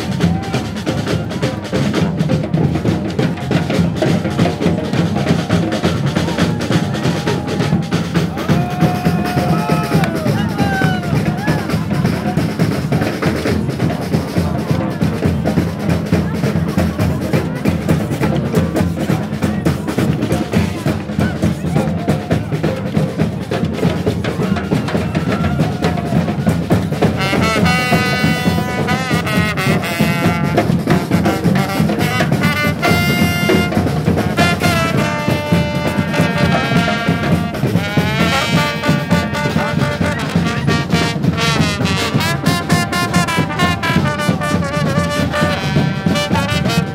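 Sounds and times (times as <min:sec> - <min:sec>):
drums keeping a steady beat: 0:00.0 - 0:46.9
brass horns playing: 0:27.2 - 0:46.9.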